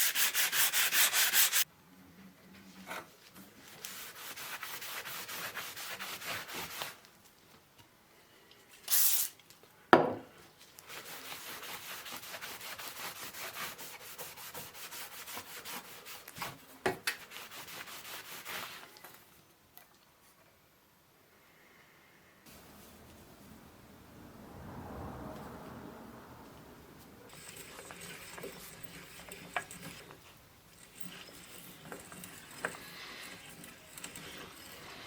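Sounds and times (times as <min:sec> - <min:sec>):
sandpaper hand sanding: 0:00.0 - 0:01.6, 0:03.8 - 0:07.0, 0:10.9 - 0:16.3, 0:17.2 - 0:18.8.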